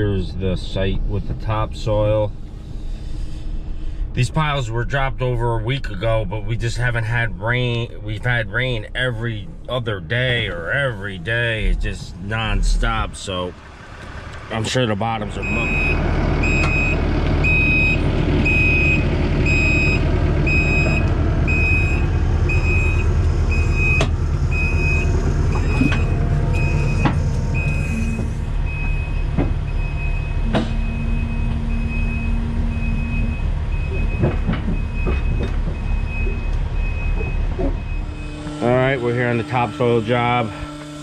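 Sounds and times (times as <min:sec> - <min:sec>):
diesel machine engine under load: 0:00.0 - 0:41.0
backup alarm beeping: 0:15.4 - 0:38.9.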